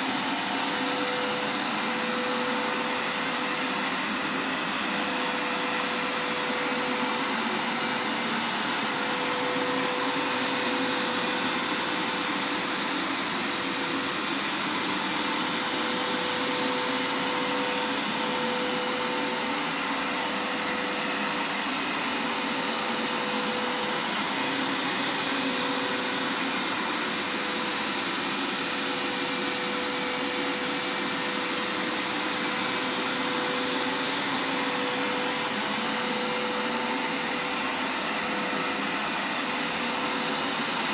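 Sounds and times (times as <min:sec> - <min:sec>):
carpet washer motor whining: 0:00.0 - 0:40.9.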